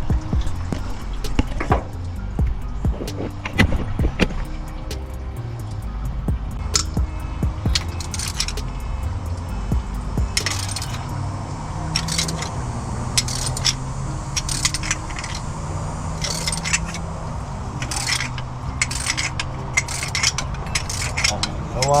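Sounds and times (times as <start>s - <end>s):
low steady drone: 0.0s - 22.0s
metal tools clinking: 7.6s - 11.3s, 11.9s - 12.6s, 13.2s - 13.8s, 14.4s - 15.5s, 16.2s - 17.1s, 17.7s - 22.0s.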